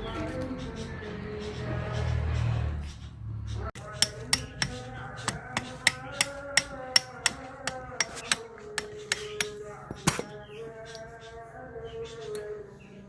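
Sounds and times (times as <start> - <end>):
hammer striking metal: 3.8 - 10.3.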